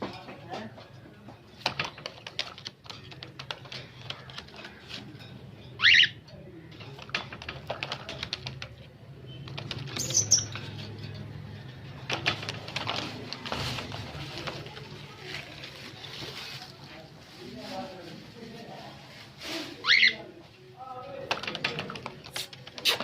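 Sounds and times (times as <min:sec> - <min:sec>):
parrot high squeak: 0:05.8 - 0:06.2, 0:19.8 - 0:20.2
clicks and rustling: 0:06.7 - 0:16.8.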